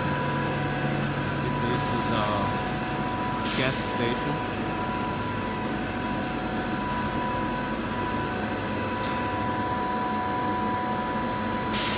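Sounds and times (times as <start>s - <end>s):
industrial machinery hiss: 1.1s - 4.6s, 11.6s - 11.9s.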